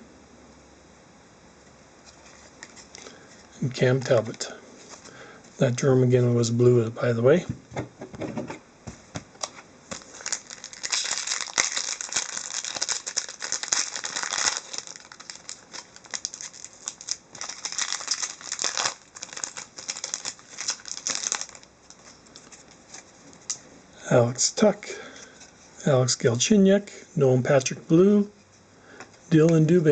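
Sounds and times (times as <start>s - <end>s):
card pack wrapper crinkling: 2.1s - 5.1s, 9.4s - 23.6s.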